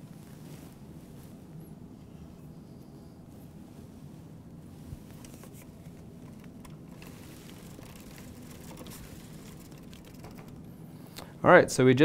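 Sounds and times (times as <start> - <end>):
bike chain clicking over sprockets: 6.3 - 10.7.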